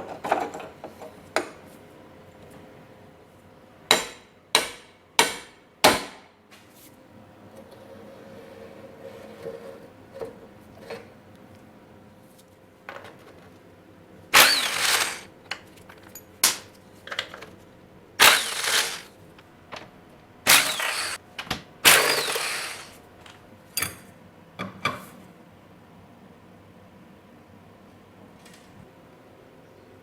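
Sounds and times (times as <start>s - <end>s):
angle grinder grinding metal: 14.4s - 15.3s, 18.2s - 19.1s, 20.5s - 21.2s, 21.8s - 23.0s.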